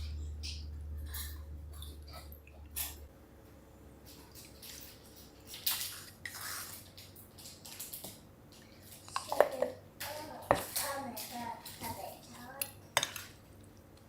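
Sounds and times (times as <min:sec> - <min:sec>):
low hum: 0:00.0 - 0:04.0.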